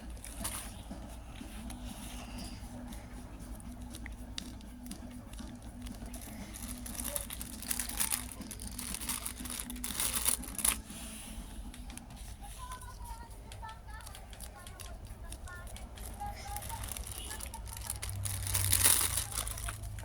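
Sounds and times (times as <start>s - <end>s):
plastic packaging crinkling: 3.8s - 11.0s, 11.6s - 20.0s.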